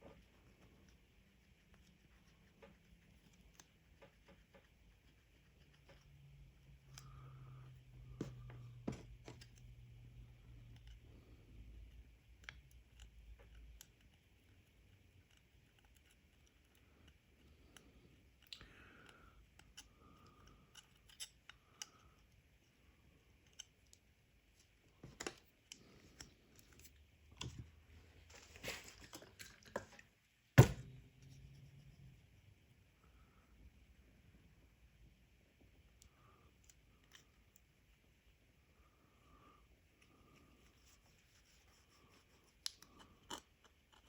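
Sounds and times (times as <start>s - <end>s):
small clicks taps and scrapes: 0.0s - 30.2s, 40.0s - 44.0s.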